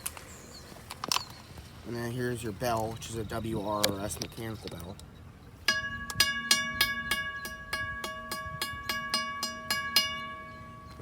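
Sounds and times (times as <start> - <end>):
railroad crossing bell ringing: 5.7 - 11.0.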